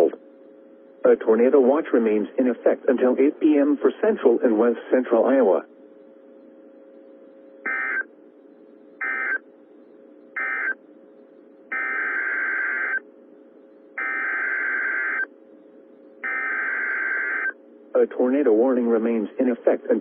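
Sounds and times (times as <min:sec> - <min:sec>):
faint radio hum and hiss: 0:00.0 - 0:20.0.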